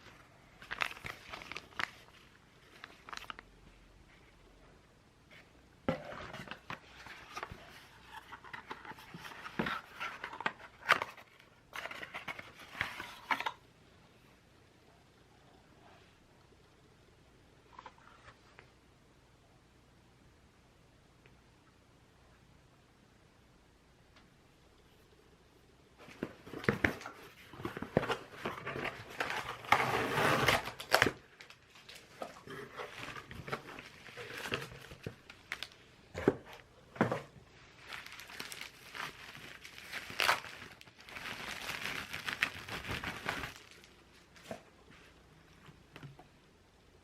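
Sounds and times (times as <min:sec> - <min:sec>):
packaging crinkling by hand: 0:00.0 - 0:03.6, 0:26.0 - 0:35.9, 0:37.8 - 0:44.6.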